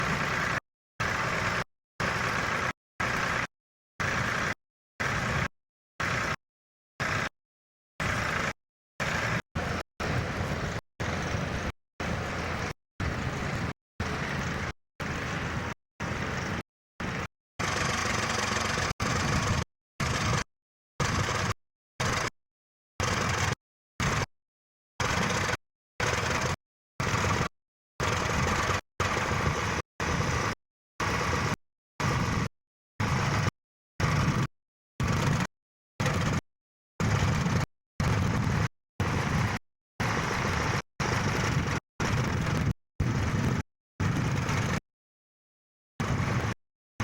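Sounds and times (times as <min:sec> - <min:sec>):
tractor engine running: 0:08.1 - 0:20.4.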